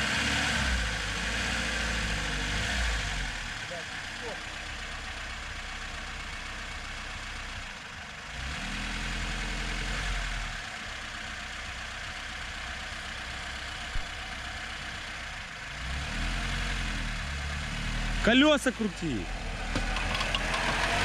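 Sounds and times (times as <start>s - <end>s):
car engine revving: 0.0s - 4.6s, 8.2s - 10.8s, 15.4s - 21.0s.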